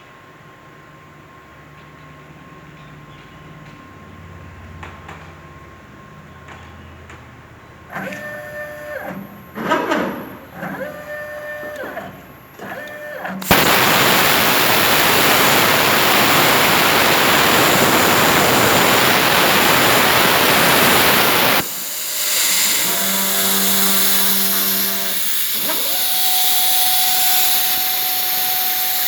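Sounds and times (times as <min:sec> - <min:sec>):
motor whining: 0:13.4 - 0:29.0
plasma cutter hissing: 0:13.4 - 0:29.0.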